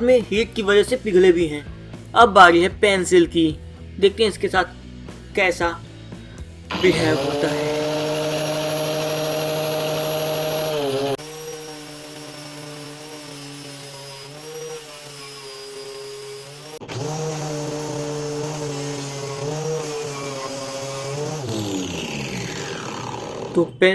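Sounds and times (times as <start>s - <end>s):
angle grinder motor whining: 5.8s - 23.8s
pencil rasping against sanding disc: 6.8s - 22.2s.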